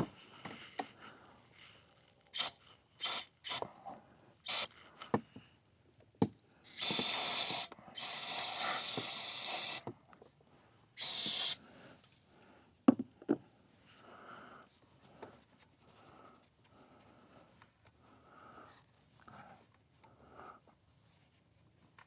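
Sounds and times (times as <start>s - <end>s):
aerosol spray hissing: 2.4s - 3.6s, 4.5s - 4.7s, 6.7s - 9.9s, 11.0s - 11.6s.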